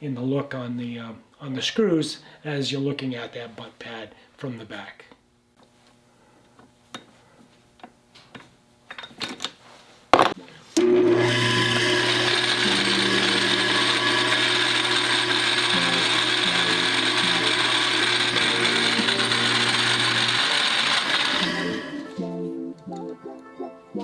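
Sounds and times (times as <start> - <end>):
electric power tool motor humming: 10.8 - 22.3.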